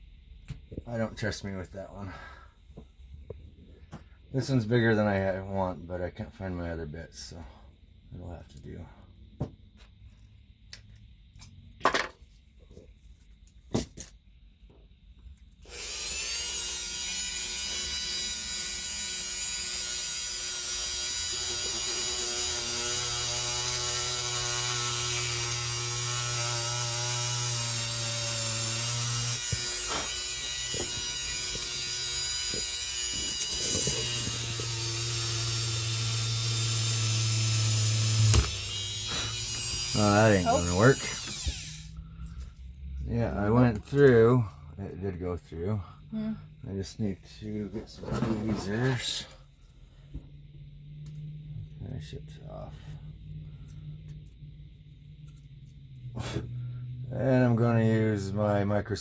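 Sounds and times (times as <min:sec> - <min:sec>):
small electric drill boring: 0:15.6 - 0:42.0
deeper hum: 0:48.6 - 0:58.8.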